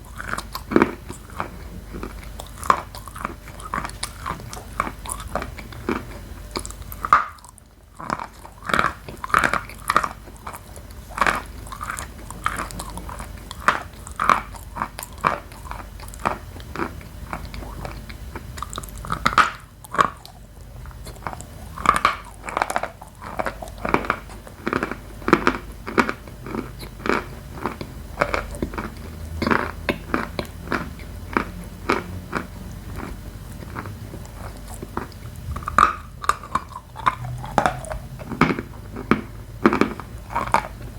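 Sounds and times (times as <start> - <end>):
soft chewing: 0.0 - 40.9.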